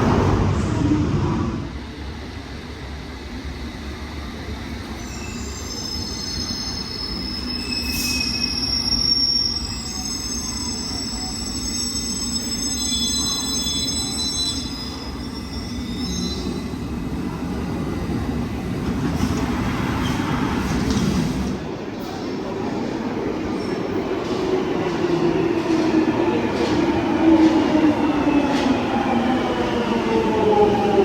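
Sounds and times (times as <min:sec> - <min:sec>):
train rumbling: 0:00.0 - 0:05.0, 0:14.9 - 0:31.0.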